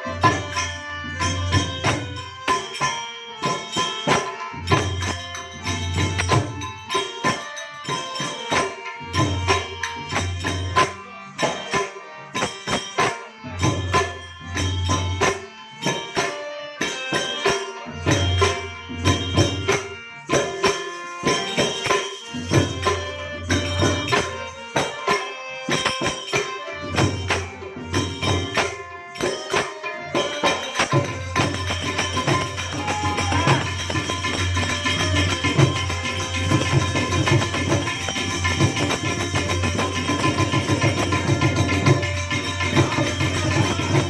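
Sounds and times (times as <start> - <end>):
held melody: 0.0 - 44.0
quick percussion beat: 0.0 - 44.0.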